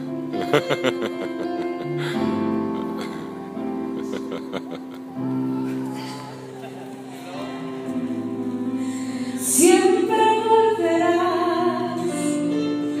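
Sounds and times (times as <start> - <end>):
woman singing long notes: 9.4 - 13.0.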